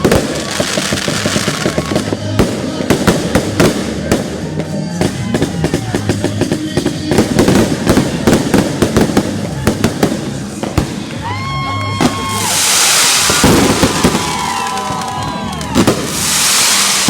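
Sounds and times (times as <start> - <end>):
fireworks bangs: 0.0 - 17.0
fireworks crackling: 0.0 - 17.0
music with low bass: 0.1 - 11.8.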